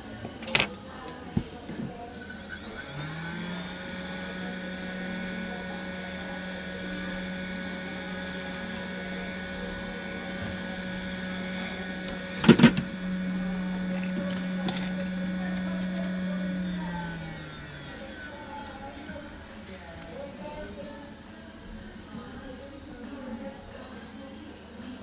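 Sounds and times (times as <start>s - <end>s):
small electric motor humming: 0.0s - 20.0s.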